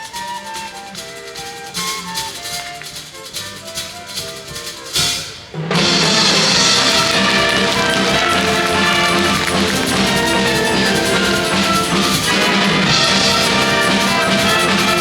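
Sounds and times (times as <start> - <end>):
wind band playing melody: 0.0 - 15.0
drum kit beat: 4.2 - 15.0.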